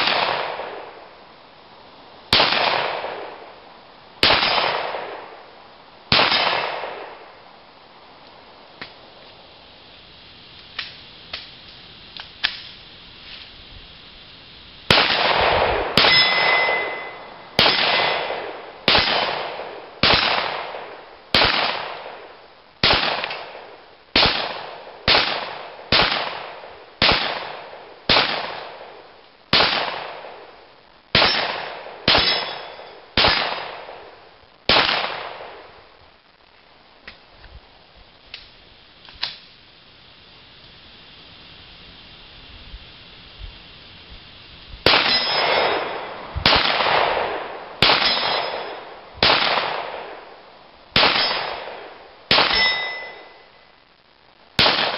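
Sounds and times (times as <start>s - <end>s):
pistol shots: 0.0s - 0.9s, 2.3s - 3.3s, 4.2s - 5.2s, 6.1s - 7.2s, 14.9s - 22.2s, 22.8s - 23.6s, 24.2s - 28.7s, 29.5s - 30.4s, 31.2s - 34.0s, 34.7s - 35.6s, 44.9s - 50.2s, 51.0s - 53.4s, 54.6s - 54.9s
steel targets clanging: 16.0s - 18.3s, 32.1s - 33.0s, 44.9s - 46.1s, 47.8s - 48.8s, 52.4s - 53.4s.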